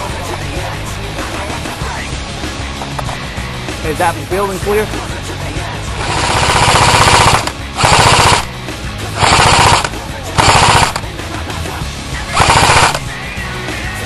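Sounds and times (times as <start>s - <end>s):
background music: 0.0s - 14.0s
airsoft gun full-auto bursts: 6.0s - 8.6s, 9.2s - 11.2s, 12.3s - 13.1s.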